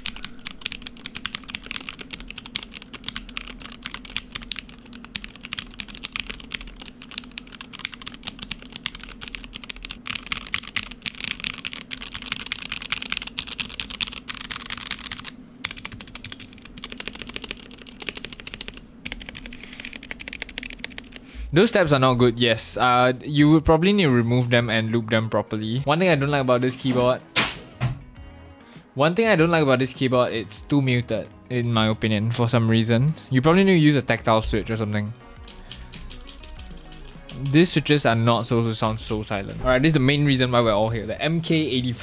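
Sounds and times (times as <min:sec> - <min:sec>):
mechanical keyboard typing: 0:00.0 - 0:21.2, 0:35.4 - 0:38.0.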